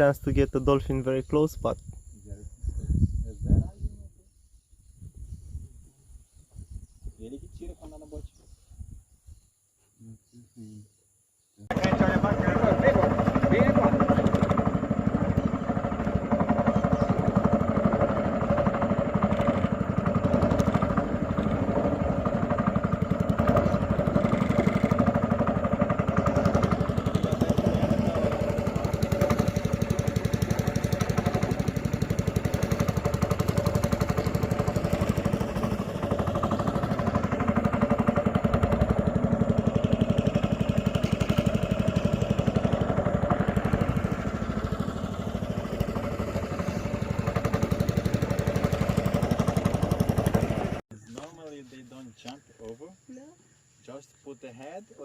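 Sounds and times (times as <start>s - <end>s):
boat engine running steadily: 11.7s - 51.3s.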